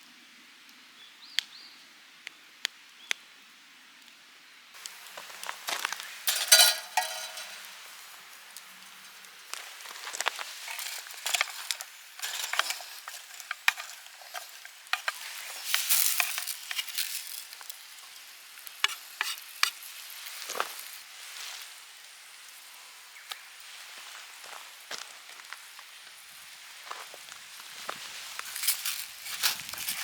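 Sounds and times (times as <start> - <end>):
sharp pops and crackles: 4.8 - 20.8
food sizzling in a pan: 4.8 - 30.0.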